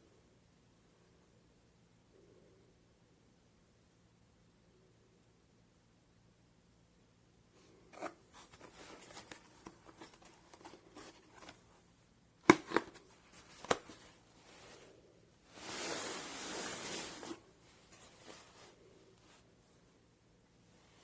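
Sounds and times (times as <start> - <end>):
rustling and scraping: 7.6 - 11.8, 12.5 - 19.8.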